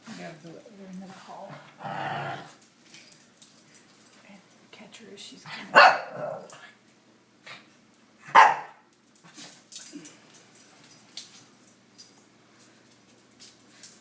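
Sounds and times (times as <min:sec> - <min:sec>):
dog barking: 0:05.7 - 0:06.5, 0:08.3 - 0:08.8.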